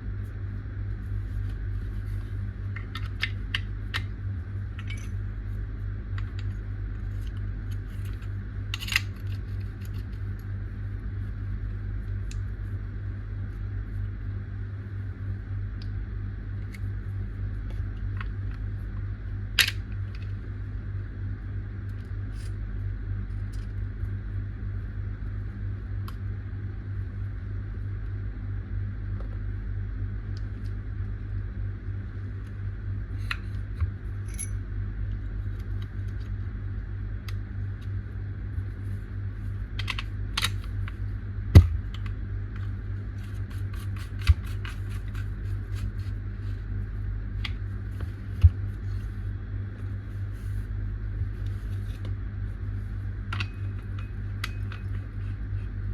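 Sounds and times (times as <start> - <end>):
steady low hum: 0.0 - 55.9.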